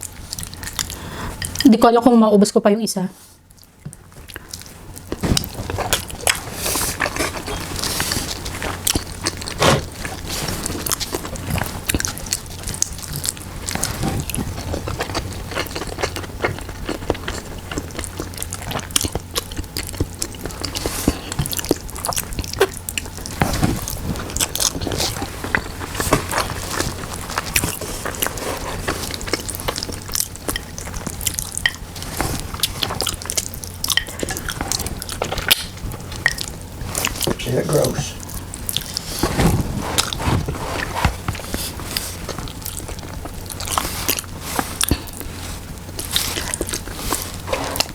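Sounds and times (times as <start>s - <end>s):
chewing with wet clicks and smacks: 0.0s - 1.8s, 3.5s - 39.1s, 41.3s - 47.9s
steady low hum: 0.0s - 47.9s.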